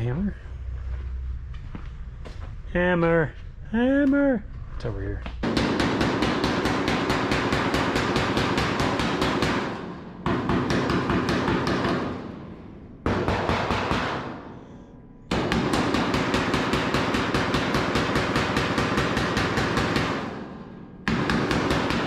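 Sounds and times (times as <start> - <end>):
hammer tapping on sheet metal: 5.5 - 12.1.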